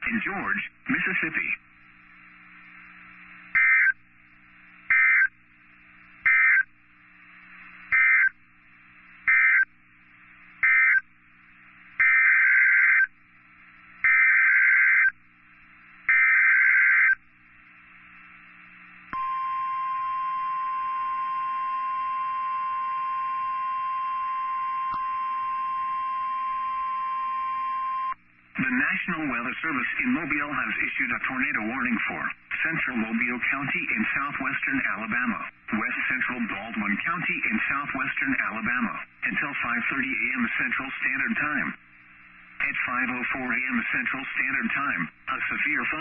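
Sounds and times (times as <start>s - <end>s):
steady warning alarm tone: 4.9s - 5.4s, 6.3s - 6.7s, 9.3s - 9.7s, 12.0s - 13.1s, 14.0s - 15.2s, 16.1s - 17.2s, 19.1s - 28.2s.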